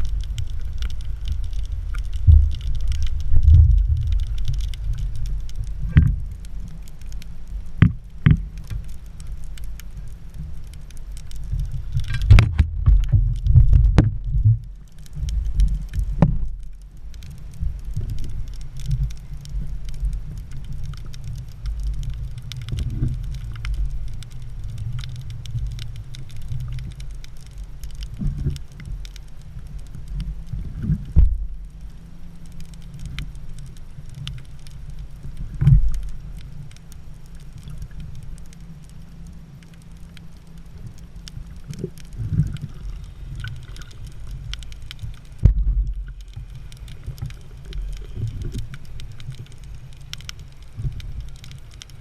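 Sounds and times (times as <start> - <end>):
muffled rumble of water: 0.0 - 52.0
sharp clicks and knocks: 12.0 - 14.6.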